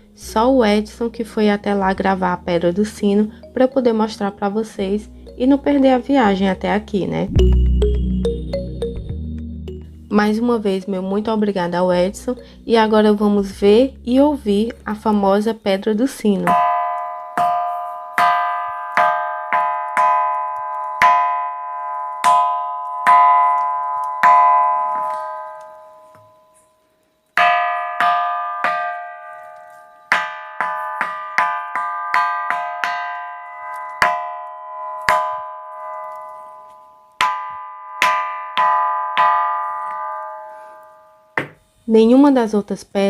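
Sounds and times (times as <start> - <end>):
ringing rock being struck: 16.5 - 26.4, 27.4 - 41.6.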